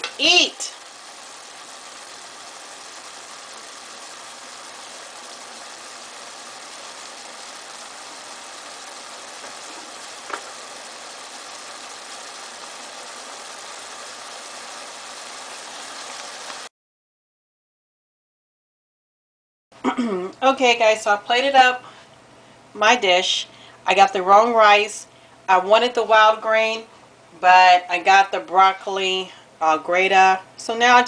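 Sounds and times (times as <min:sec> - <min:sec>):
food sizzling in a pan: 0:00.0 - 0:16.7.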